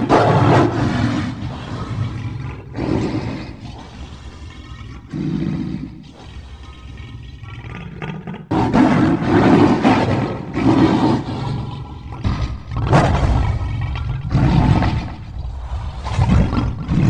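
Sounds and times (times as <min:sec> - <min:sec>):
loud harsh monster roars: 0:00.0 - 0:04.2
low rough monster growl: 0:00.0 - 0:17.0.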